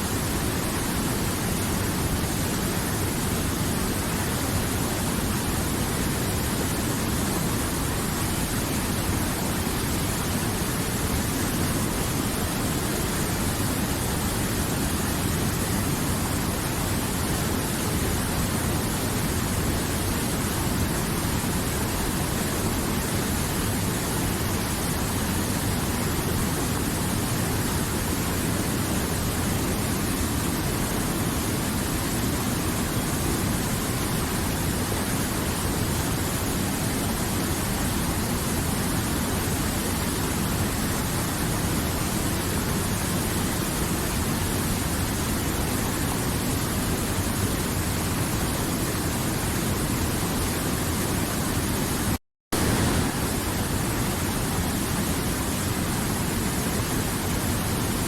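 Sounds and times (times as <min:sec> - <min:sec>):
river water rushing: 0:26.6 - 0:58.0.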